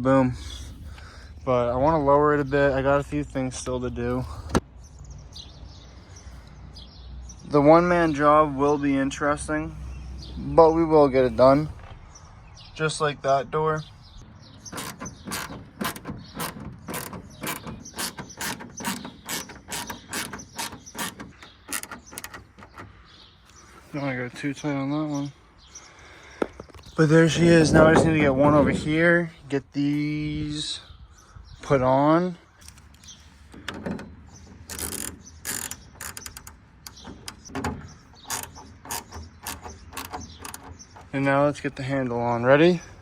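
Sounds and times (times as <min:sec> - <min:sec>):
hand ratchet clicking: 0:14.8 - 0:22.8, 0:34.7 - 0:37.4.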